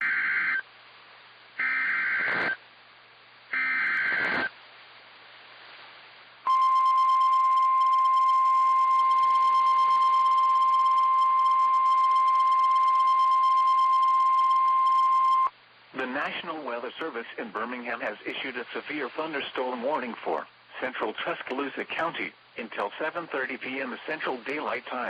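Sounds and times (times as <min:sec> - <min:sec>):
buzzy digital data tones: 0:01.6 - 0:02.6, 0:03.6 - 0:04.5, 0:06.5 - 0:15.5
steady single-pitch alert tone: 0:06.5 - 0:15.5.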